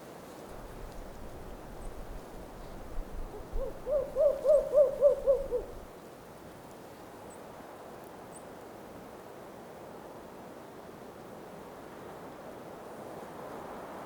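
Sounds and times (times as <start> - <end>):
low hiss of wind: 0.0 - 14.0
owl hooting: 3.3 - 5.9.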